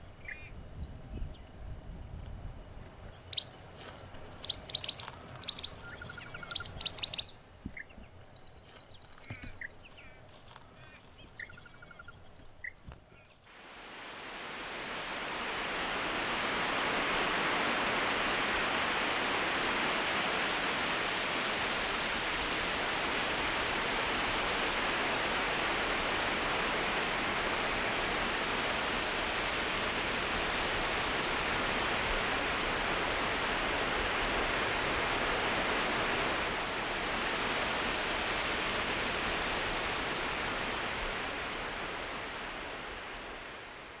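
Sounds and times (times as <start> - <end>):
steady rushing noise: 0.0 - 13.3.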